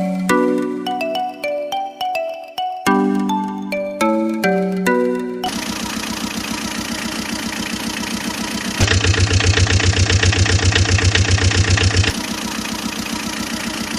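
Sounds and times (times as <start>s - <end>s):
engine idling with rapid chug: 5.5s - 13.9s.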